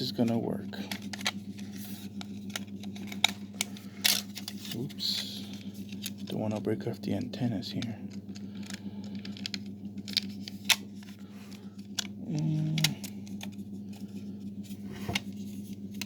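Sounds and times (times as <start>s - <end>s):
steady low hum: 0.0s - 16.0s
plastic parts clicking: 6.0s - 13.6s.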